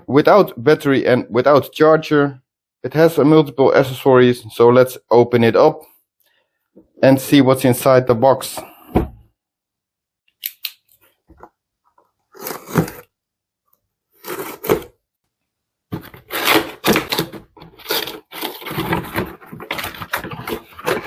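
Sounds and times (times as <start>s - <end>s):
cardboard packaging rustling and tearing: 12.3s - 13.1s, 14.2s - 15.0s, 15.9s - 21.0s.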